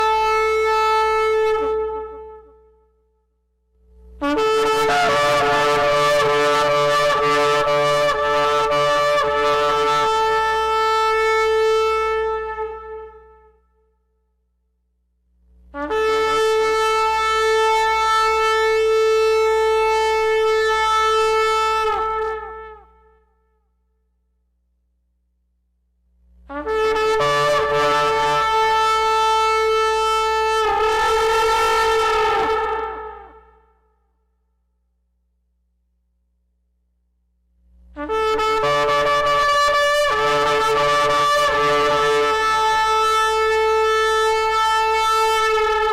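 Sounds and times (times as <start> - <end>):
horn blasts: 4.2 - 13.5, 26.5 - 33.6, 37.9 - 45.9.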